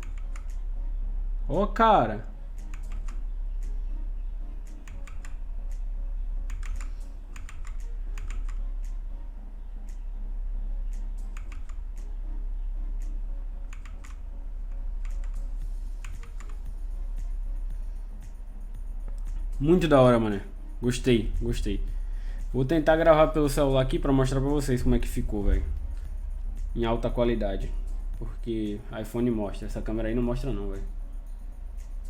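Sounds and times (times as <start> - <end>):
mechanical keyboard clicks: 0.0 - 0.6, 2.7 - 3.2, 4.8 - 5.4, 6.5 - 8.6, 11.3 - 11.8, 13.7 - 14.2, 16.0 - 16.6
steady low hum: 0.0 - 32.0.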